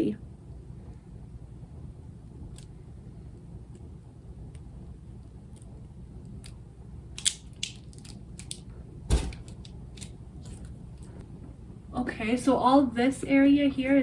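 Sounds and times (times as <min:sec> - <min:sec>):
low steady hum: 0:00.0 - 0:14.0
plastic parts clicking and rustling: 0:07.2 - 0:08.7.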